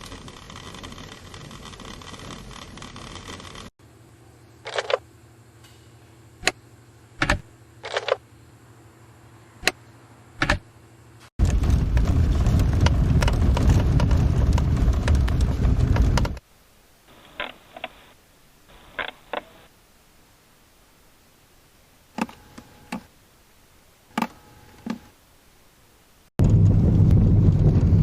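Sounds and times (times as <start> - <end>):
rumbling road noise with rattling: 0.0 - 3.7, 11.4 - 16.4, 26.4 - 28.0
low cabin hum: 11.4 - 16.4, 26.4 - 28.0.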